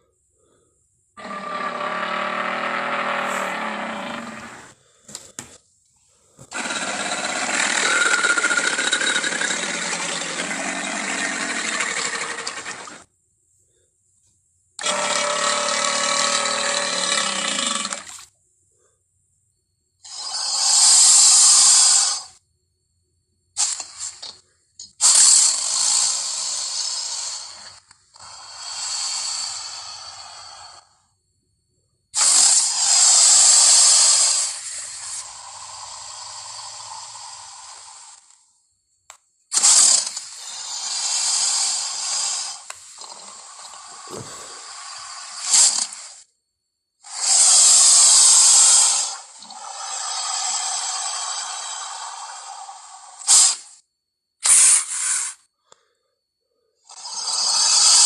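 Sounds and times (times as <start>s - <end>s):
creature hissing and growling: 1.2s - 5.0s, 32.2s - 38.2s, 39.6s - 46.2s, 47.0s - 53.7s, 54.4s - 55.4s, 56.9s - 58.0s.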